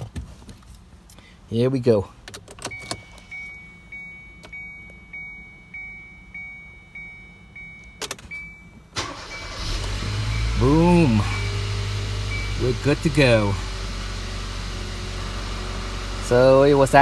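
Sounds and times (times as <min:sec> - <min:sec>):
car engine starting and running: 0:07.6 - 0:17.0.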